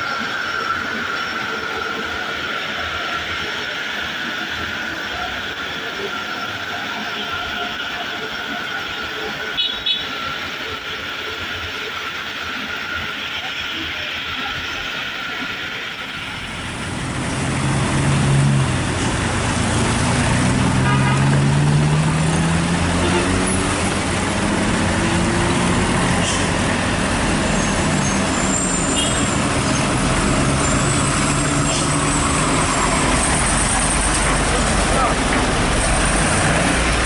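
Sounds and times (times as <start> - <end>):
loud rushing noise: 15.2 - 37.0
truck engine under load: 16.2 - 37.0.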